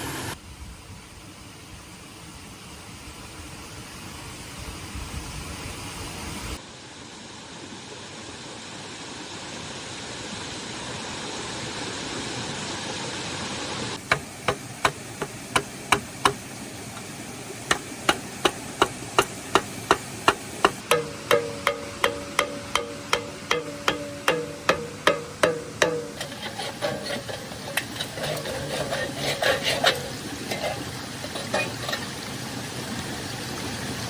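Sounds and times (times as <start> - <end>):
sharp knocks on wood: 17.7 - 26.2.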